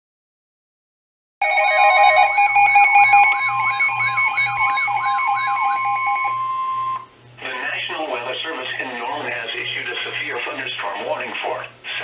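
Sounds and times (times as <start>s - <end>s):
two-tone alarm with wailing tone: 1.4s - 7.1s.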